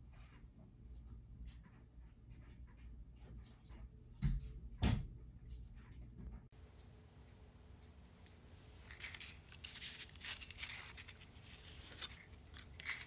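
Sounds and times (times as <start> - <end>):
faint scratching and rubbing: 6.6 - 13.0.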